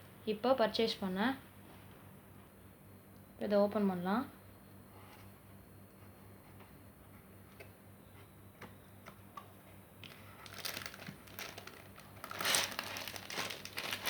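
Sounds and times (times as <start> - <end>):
packaging crinkling: 10.0 - 14.0.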